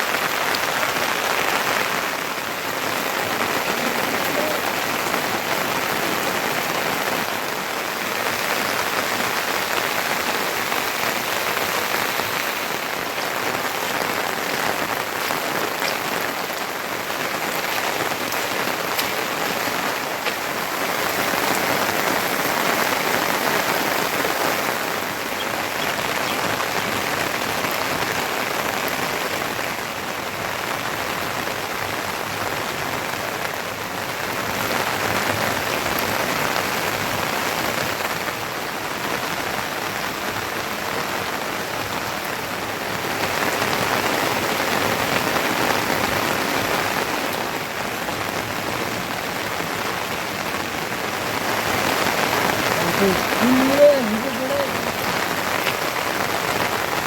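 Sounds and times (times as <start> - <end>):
heavy rain falling: 0.0 - 57.0
raindrop hits: 0.1 - 7.1, 8.1 - 29.0.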